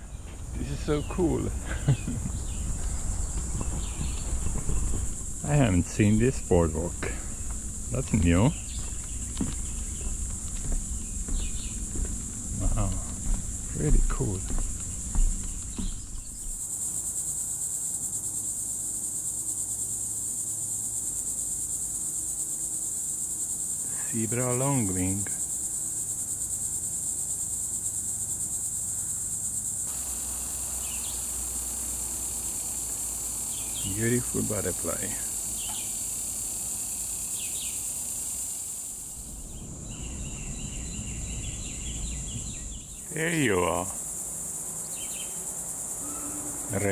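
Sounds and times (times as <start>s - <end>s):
bird chirps: 0.0s - 16.6s, 33.5s - 36.0s, 39.1s - 44.0s, 44.8s - 46.9s
repeated bird notes: 0.0s - 16.6s, 39.2s - 44.0s
insects trilling: 0.0s - 46.9s.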